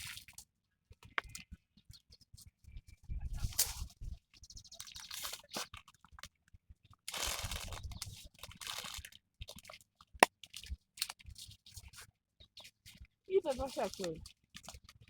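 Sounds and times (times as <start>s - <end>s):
leaves rustling as plucked: 7.1s - 8.0s.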